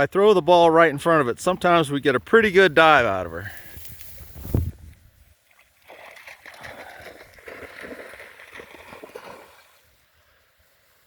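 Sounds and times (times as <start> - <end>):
dog splashing through water: 5.5 - 9.9.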